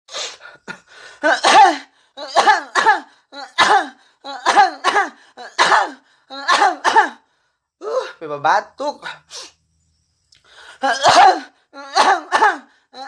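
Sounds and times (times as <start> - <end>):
woman coughing: 1.2 - 7.2, 10.8 - 12.7.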